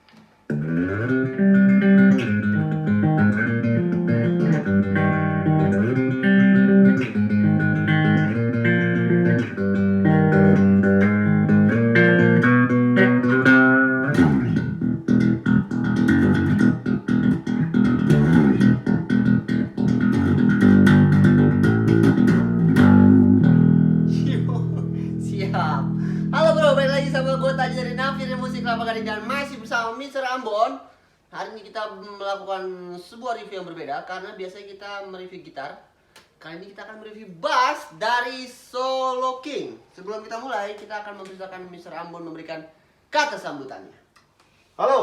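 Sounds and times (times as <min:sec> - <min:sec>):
electric bass guitar playing: 0:00.5 - 0:29.9.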